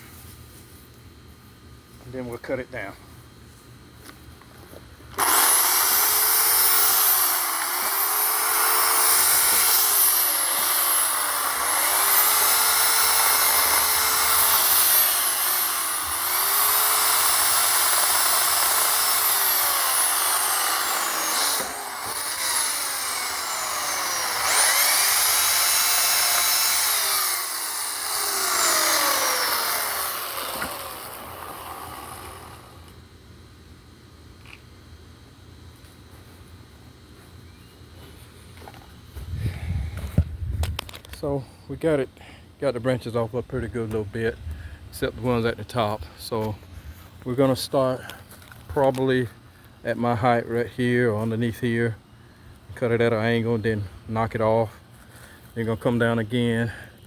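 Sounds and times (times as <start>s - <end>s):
electric chainsaw cutting limbs: 5.2s - 33.0s.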